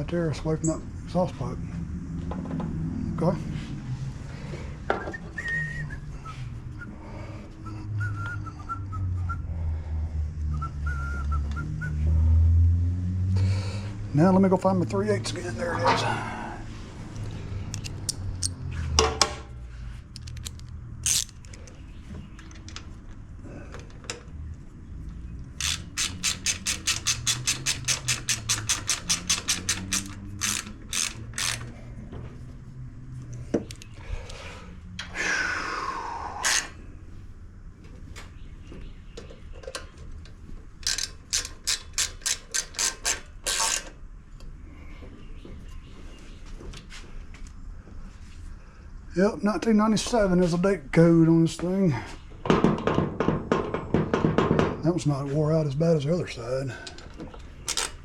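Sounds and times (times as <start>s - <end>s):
ratchet wrench clicking: 17.7s - 18.6s, 20.2s - 21.7s, 25.5s - 31.8s, 36.4s - 36.8s, 40.8s - 43.9s, 57.7s - 58.0s
knocks: 52.5s - 54.8s.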